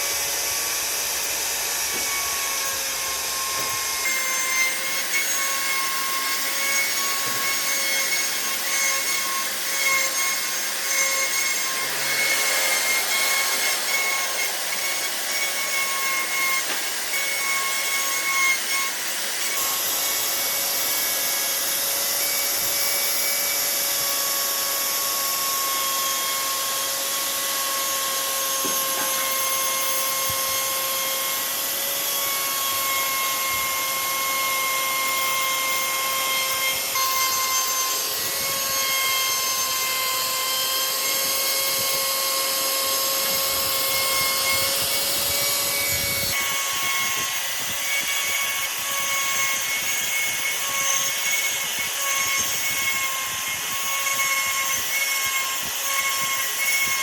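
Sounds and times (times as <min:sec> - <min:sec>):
power tool grinding wood: 0:00.0 - 0:57.0.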